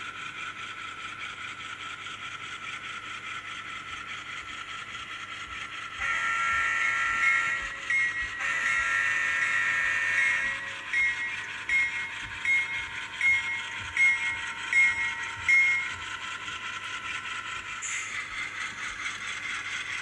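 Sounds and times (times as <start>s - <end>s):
diesel engine sound: 1.2s - 20.0s
locomotive horn chord: 6.0s - 16.1s
locomotive bell ringing: 6.0s - 19.0s.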